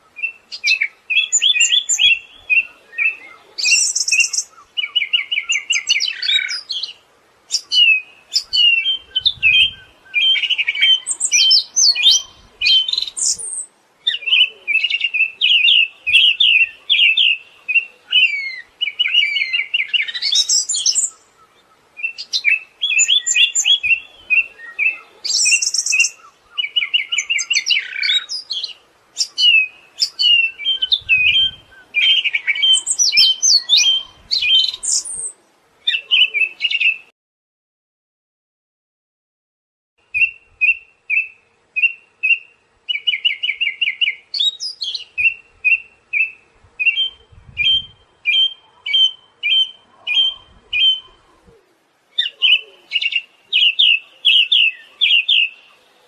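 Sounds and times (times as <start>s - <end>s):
thrush singing trills: 0.0s - 37.1s, 52.1s - 56.0s.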